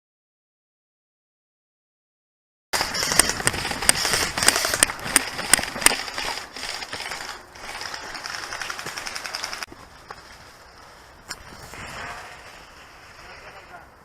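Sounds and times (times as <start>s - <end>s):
sharp clicks: 2.8s - 9.7s
crackling rustle: 2.8s - 14.0s.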